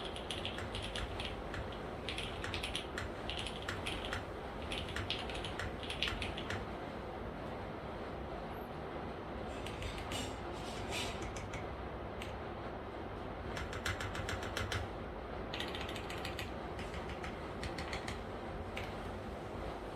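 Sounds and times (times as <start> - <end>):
mechanical keyboard typing: 0.0 - 6.7, 13.5 - 14.9, 15.5 - 19.0.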